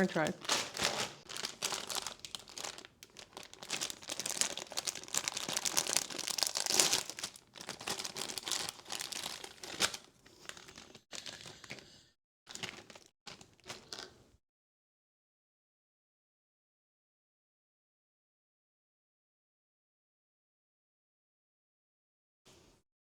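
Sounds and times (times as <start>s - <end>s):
packaging crinkled and torn: 0.2s - 11.8s, 12.5s - 14.2s.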